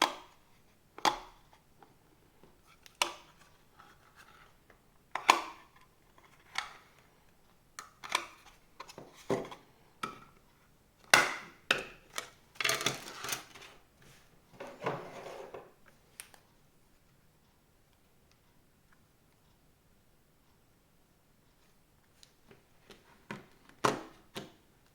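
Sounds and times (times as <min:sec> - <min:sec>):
plastic scraping and sliding: 0:02.7 - 0:04.6, 0:12.7 - 0:15.8.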